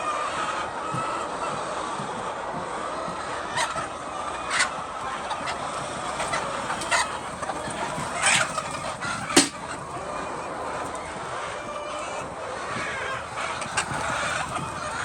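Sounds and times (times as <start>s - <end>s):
chickens clucking: 0.0s - 15.0s
steady background hum: 4.4s - 15.0s.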